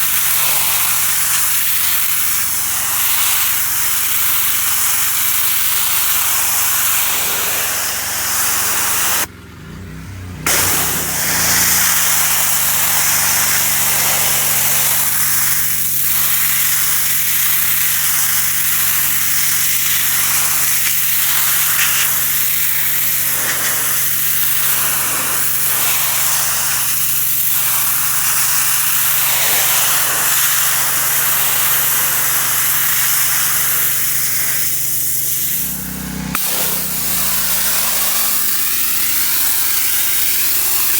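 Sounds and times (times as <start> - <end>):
water jet hissing: 0.0 - 9.3, 10.5 - 40.9
pressure washer motor humming: 0.0 - 40.9.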